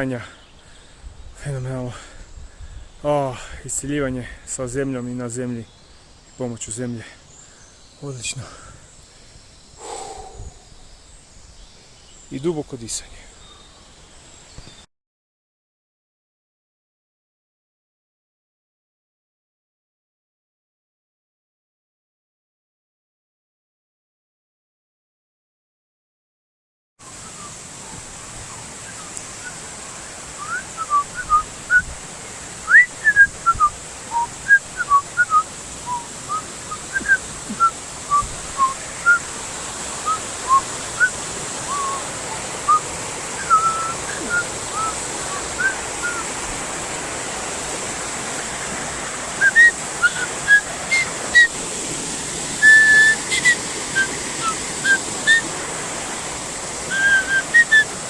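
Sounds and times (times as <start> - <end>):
high whistled notes: 41.7 - 42.0, 43.4 - 46.2, 49.4 - 51.5, 52.6 - 55.5, 56.9 - 57.9.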